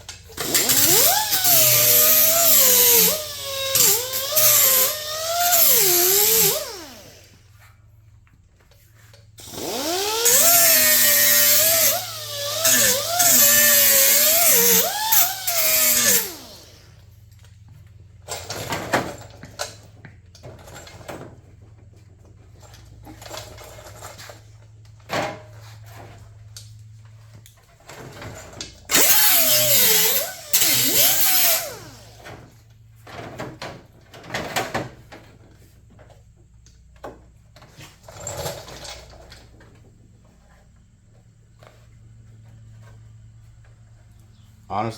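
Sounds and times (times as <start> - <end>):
power grinder grinding metal: 0.3 - 7.4, 9.4 - 16.9, 28.9 - 32.2.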